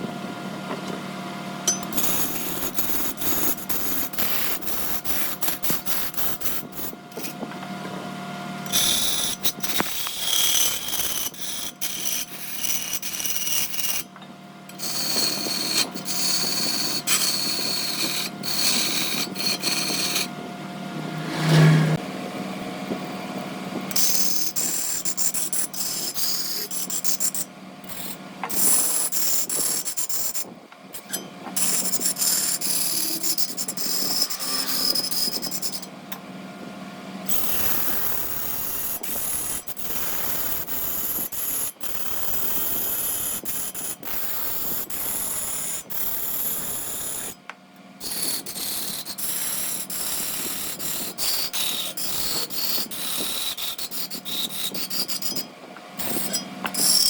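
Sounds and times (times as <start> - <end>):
lathe motor hum: 1.6 - 36.2
tool scraping spinning wood: 1.7 - 36.1, 37.2 - 47.4, 48.0 - 57.0.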